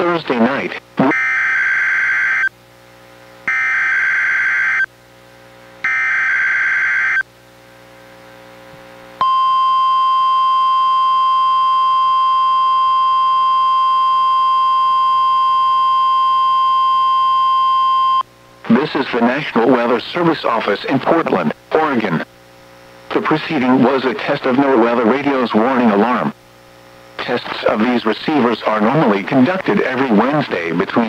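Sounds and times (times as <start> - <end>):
steady warning alarm tone: 1.0 - 2.5, 3.5 - 4.9, 5.8 - 7.2, 9.2 - 18.2.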